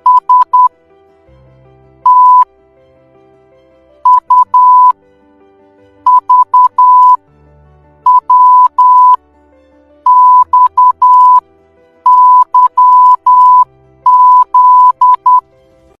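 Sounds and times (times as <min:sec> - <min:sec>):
morse code beeping tone: 0:00.0 - 0:00.7, 0:02.1 - 0:02.5, 0:04.0 - 0:05.0, 0:06.1 - 0:07.2, 0:08.1 - 0:09.2, 0:10.0 - 0:11.4, 0:12.0 - 0:15.4.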